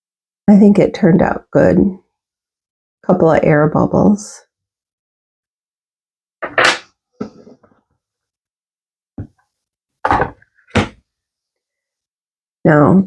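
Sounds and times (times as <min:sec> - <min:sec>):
resin pieces knocking on table: 0:10.1 - 0:11.0.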